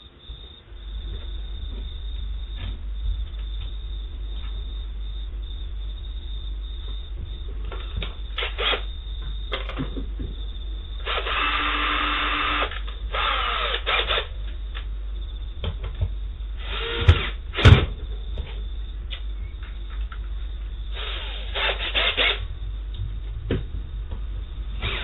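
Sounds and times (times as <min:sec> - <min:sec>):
sharp knocks: 0:17.1 - 0:18.0.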